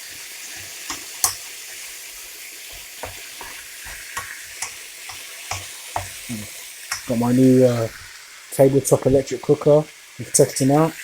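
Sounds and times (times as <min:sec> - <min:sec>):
utensil scraping a pan: 0:00.0 - 0:01.4, 0:02.6 - 0:06.3
food sizzling in a frying pan: 0:00.0 - 0:11.0.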